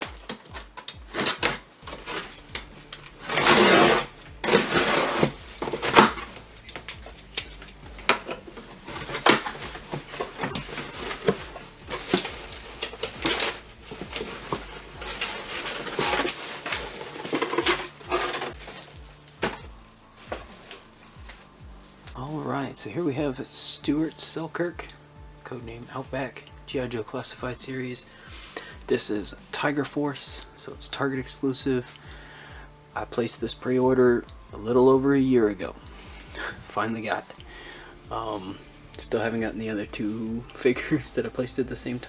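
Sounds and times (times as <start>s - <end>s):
clicks and taps of packaging: 0.0s - 3.6s
packaging rustling: 0.0s - 22.2s.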